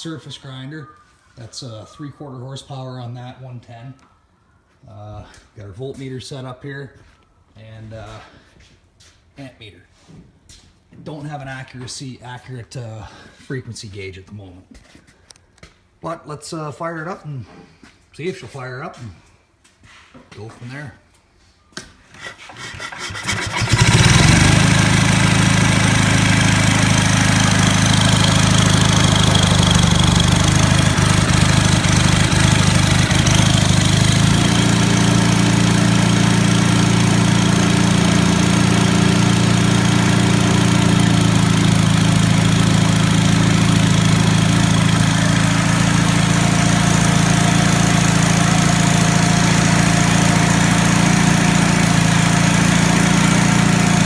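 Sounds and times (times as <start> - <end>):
generator engine starting and running: 22.2 - 54.0.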